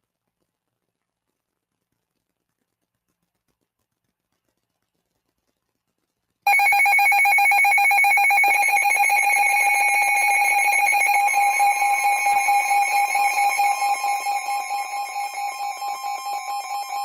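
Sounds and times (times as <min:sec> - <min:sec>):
faint higher tone: 0:06.5 - 0:17.0
harsh two-tone alarm: 0:06.5 - 0:17.0.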